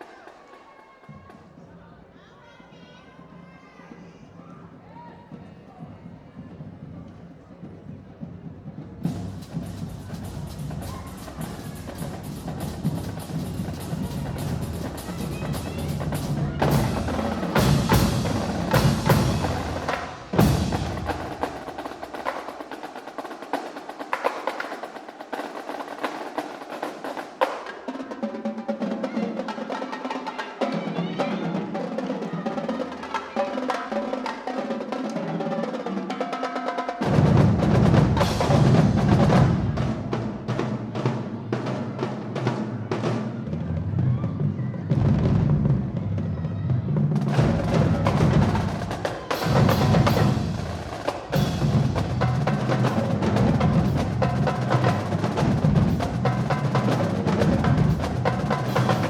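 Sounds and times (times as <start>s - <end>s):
snare and tenor drums: 5.2s - 59.0s
bass drums: 9.0s - 22.0s, 47.0s - 59.0s.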